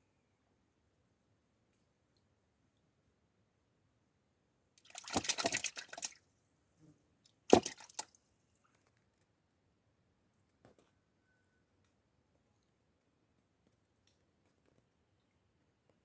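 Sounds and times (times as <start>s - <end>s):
sharp wet slap: 4.8s - 6.2s, 7.5s - 8.1s
wet splashing and squishing: 4.8s - 6.2s, 7.5s - 8.1s.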